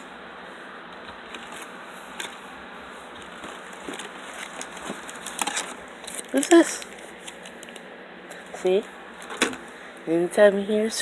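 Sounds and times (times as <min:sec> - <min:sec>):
steady low hiss: 0:00.0 - 0:11.0
clicks and rustles of food handling: 0:00.9 - 0:02.4, 0:03.1 - 0:08.5.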